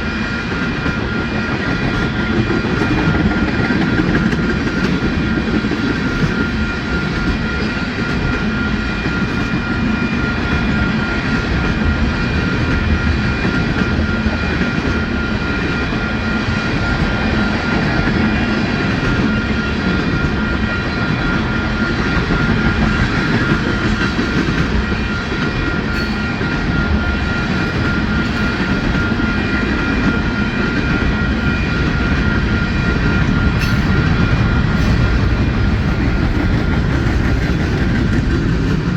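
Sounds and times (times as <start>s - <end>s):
train wheels rumbling on rails: 0.0s - 38.9s
high ringing tone: 14.0s - 36.1s.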